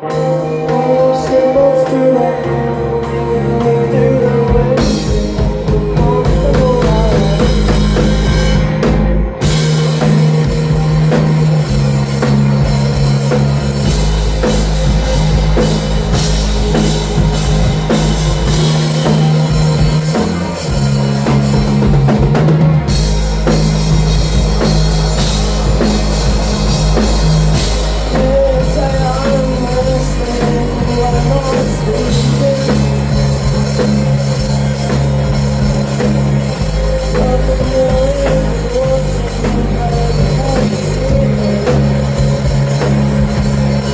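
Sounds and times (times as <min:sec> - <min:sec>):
distorted bass line: 0:00.0 - 0:43.9
drum kit: 0:00.0 - 0:43.9
wavering guitar or vocal line: 0:00.0 - 0:43.9.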